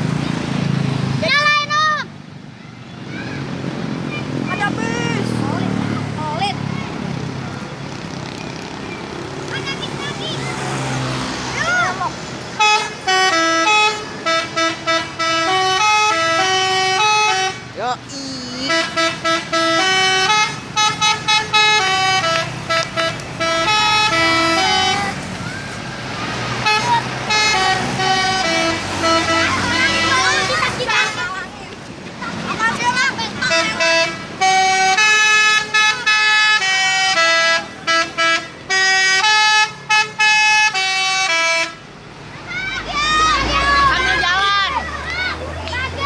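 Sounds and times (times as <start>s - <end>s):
multi-tone musical truck horn: 12.5s - 17.8s, 18.5s - 25.3s, 26.4s - 31.4s, 33.4s - 41.9s.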